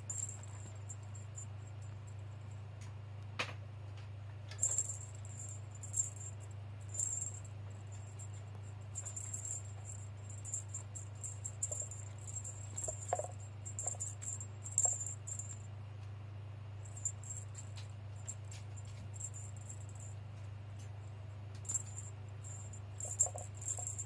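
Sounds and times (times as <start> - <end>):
kitten toy rattling and jingling: 0.0 - 2.2, 4.5 - 15.7, 16.8 - 20.2, 21.6 - 24.0
steady low hum: 0.0 - 24.0.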